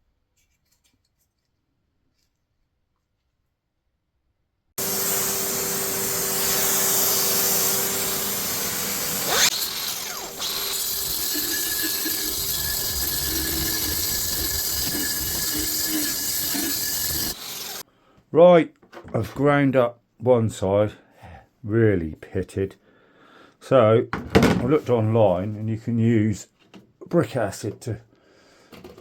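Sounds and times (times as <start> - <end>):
grinder grinding steel: 4.8 - 17.8.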